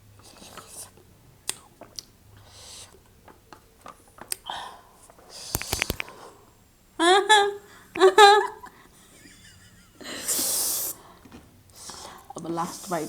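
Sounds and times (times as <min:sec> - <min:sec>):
eating clicks: 0:05.6 - 0:06.2
sharp clicks: 0:05.6 - 0:06.2
person hissing breaths and sniffing: 0:10.3 - 0:11.2.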